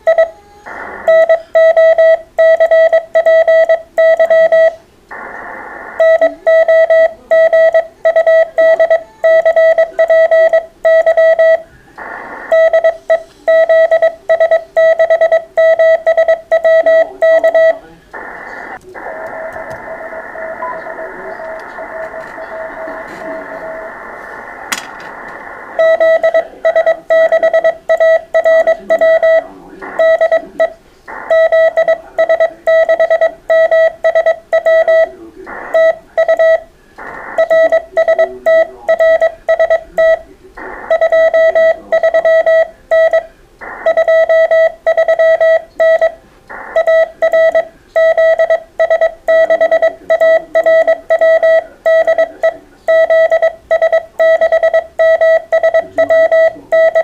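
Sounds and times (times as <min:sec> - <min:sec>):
morse code tone: 0:00.0 - 0:05.3, 0:06.0 - 0:25.1, 0:25.8 - 0:57.0
radio receiver hiss: 0:00.6 - 0:03.0, 0:04.8 - 0:09.2, 0:09.8 - 0:54.7.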